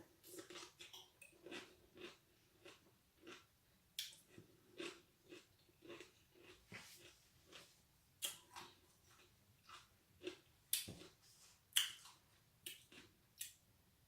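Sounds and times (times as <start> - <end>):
wet crunching chewing: 0.3 - 11.2.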